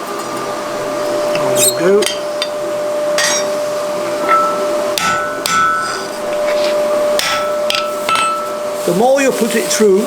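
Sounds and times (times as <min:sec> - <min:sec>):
steady hum: 0:00.0 - 0:10.0
hammer striking steel on anvil: 0:01.6 - 0:02.6, 0:03.2 - 0:03.6, 0:04.2 - 0:06.5, 0:07.1 - 0:08.7.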